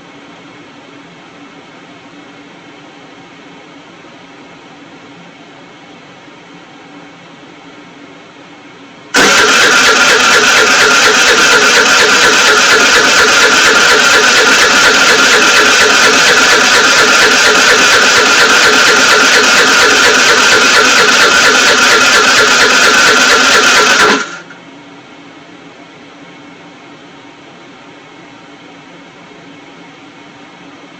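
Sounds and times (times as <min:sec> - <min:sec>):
electric starter cranking engine: 0:09.2 - 0:24.5.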